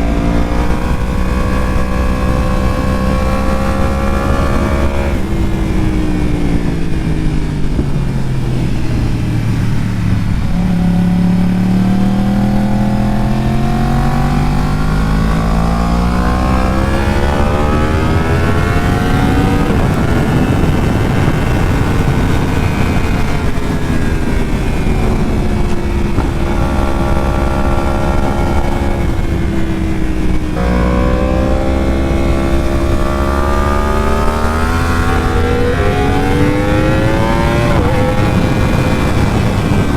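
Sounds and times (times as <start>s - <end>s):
motorcycle engine revving: 0.0s - 39.9s
wind and road noise: 0.0s - 39.9s.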